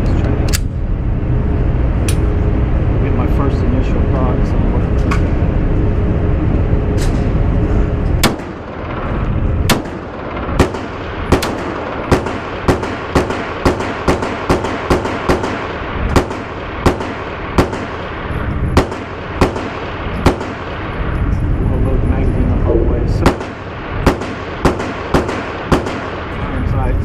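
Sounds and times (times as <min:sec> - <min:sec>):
pistol gunshots: 0:08.2 - 0:20.9, 0:23.2 - 0:26.6.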